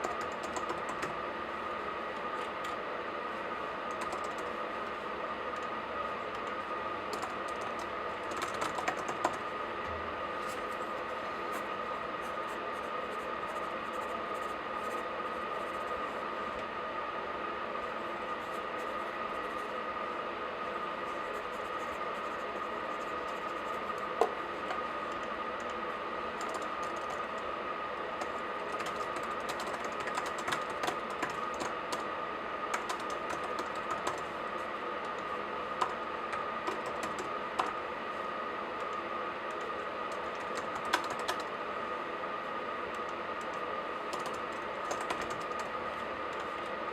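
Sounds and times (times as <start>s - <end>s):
laptop keyboard typing: 0.0s - 1.2s, 3.9s - 4.6s, 6.4s - 9.5s, 21.6s - 27.5s, 28.1s - 34.3s, 35.0s - 37.8s, 38.8s - 41.6s, 42.9s - 46.7s
faint steady hum: 0.0s - 46.9s.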